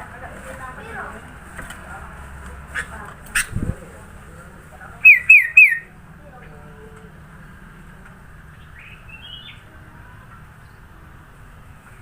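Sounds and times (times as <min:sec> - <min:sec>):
bird whistling downward notes: 0:05.0 - 0:05.9
faint bird chirps: 0:05.0 - 0:05.9, 0:08.6 - 0:10.8.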